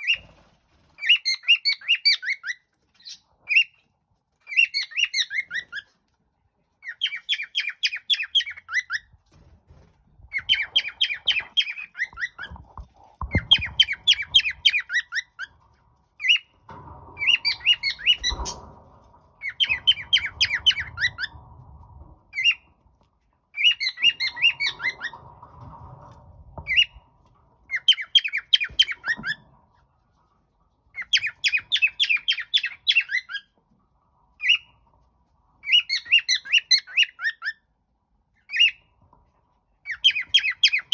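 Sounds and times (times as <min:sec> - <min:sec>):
cockatiel chirping: 0:01.0 - 0:03.8, 0:04.4 - 0:06.0, 0:06.8 - 0:09.1, 0:10.3 - 0:12.6, 0:13.3 - 0:15.5, 0:23.6 - 0:25.1, 0:27.7 - 0:29.4, 0:31.0 - 0:33.5, 0:35.6 - 0:37.6, 0:39.8 - 0:40.9.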